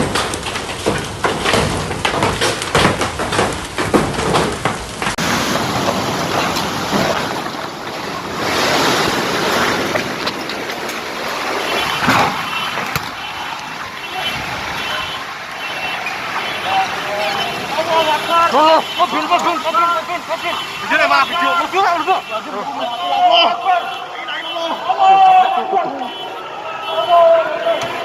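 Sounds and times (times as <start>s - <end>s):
hailstones clattering on hard surfaces: 0.0s - 22.9s
heavy rain: 0.0s - 28.0s
gusting wind: 4.5s - 21.8s.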